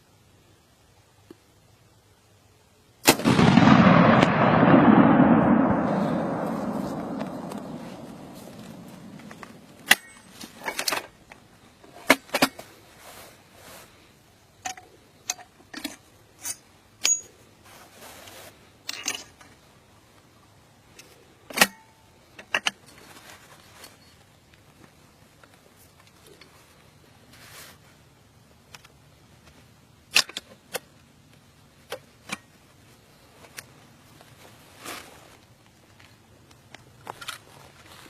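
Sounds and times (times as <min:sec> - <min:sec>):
recoilless rifle shot rumble: 0:03.1 - 0:10.0
sharp metallic clicks and clinks: 0:14.6 - 0:17.4.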